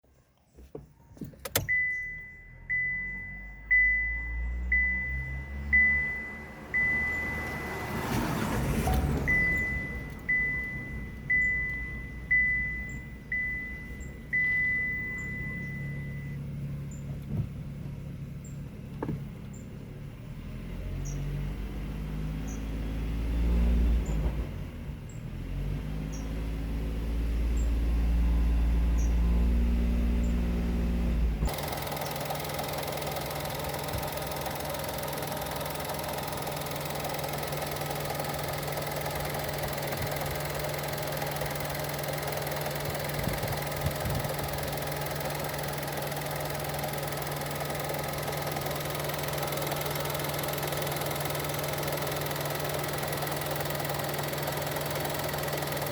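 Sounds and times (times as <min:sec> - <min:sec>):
car engine droning: 0:00.1 - 0:55.9
in-car warning chime: 0:01.0 - 0:16.6, 0:31.5 - 0:55.9.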